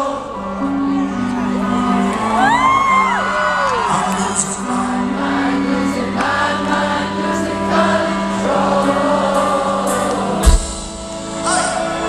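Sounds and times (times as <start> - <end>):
layered sung vocals: 0.0 - 12.0
rock band playing live: 10.3 - 12.0.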